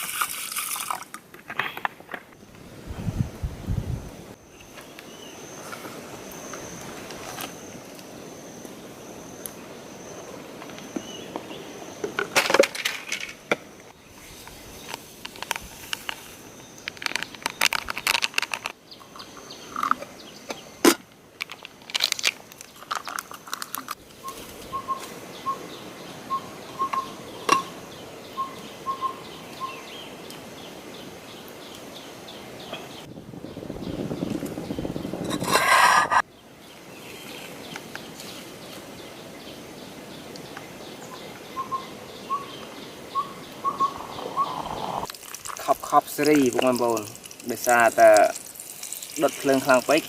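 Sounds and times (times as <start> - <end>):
dry leaves and twigs crackling: 14.1 - 20.1, 21.4 - 25.2, 45.0 - 50.0
bird piping note: 24.2 - 29.8, 41.6 - 45.1.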